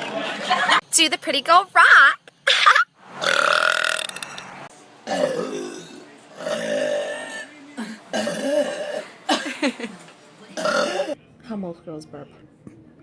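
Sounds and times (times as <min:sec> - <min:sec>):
woman burping: 0:02.5 - 0:04.4, 0:05.1 - 0:09.7, 0:10.6 - 0:11.2.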